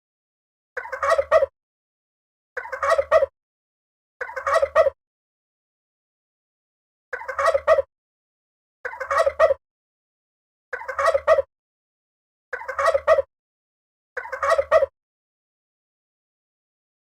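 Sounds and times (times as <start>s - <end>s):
turkey calling: 0.8s - 1.5s, 2.6s - 3.3s, 4.2s - 5.0s, 7.2s - 7.9s, 8.9s - 9.6s, 10.7s - 11.5s, 12.5s - 13.3s, 14.2s - 14.9s.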